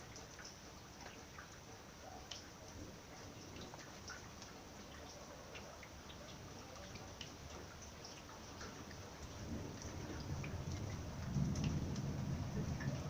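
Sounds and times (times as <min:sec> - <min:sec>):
rain dripping: 0:00.0 - 0:13.0
low rumble of thunder: 0:09.2 - 0:13.0.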